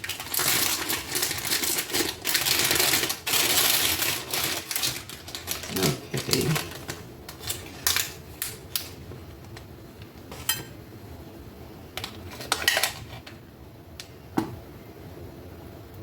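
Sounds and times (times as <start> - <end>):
dishes and utensils clattering: 10.3 - 10.8.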